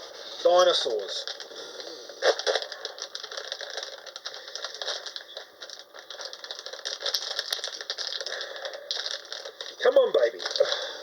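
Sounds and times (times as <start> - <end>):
small container clicks and rattles: 2.2 - 10.8.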